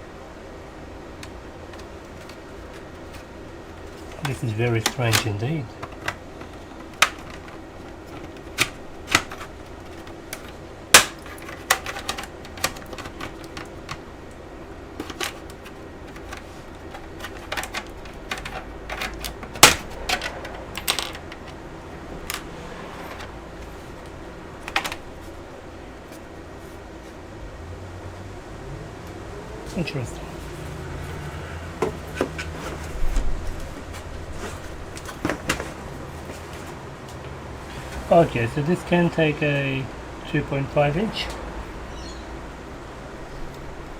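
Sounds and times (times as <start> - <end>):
plastic cover clicks and snaps: 4.8 - 14.0, 15.0 - 21.5.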